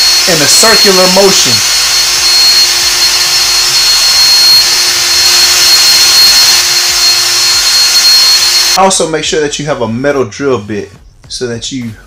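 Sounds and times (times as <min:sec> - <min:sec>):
electric drill drilling metal: 0:00.0 - 0:08.8.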